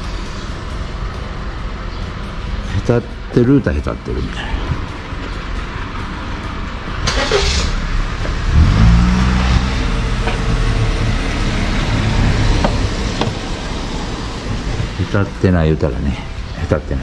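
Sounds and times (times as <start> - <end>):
car engine revving: 4.8 - 15.4.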